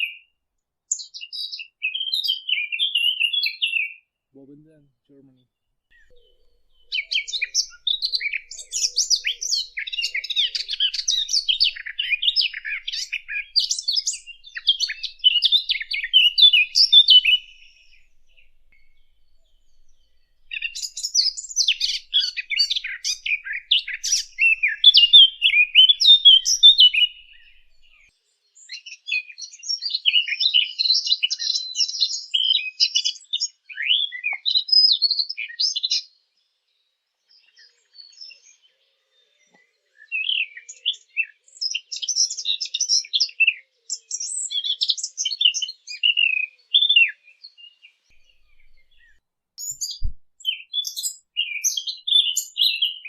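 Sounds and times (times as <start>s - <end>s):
bird warbling: 6.0s - 28.1s, 48.2s - 50.0s.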